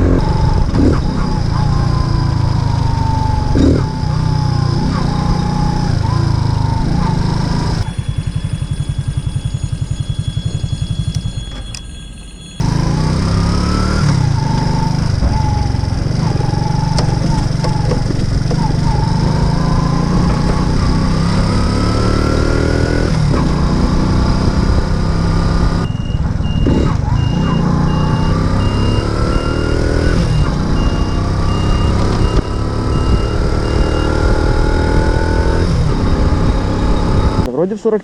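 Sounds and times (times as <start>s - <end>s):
moped engine revving: 0.0s - 11.5s, 12.6s - 37.7s
thin electronic beep: 7.8s - 13.8s, 25.4s - 37.6s
wind noise: 14.2s - 21.6s.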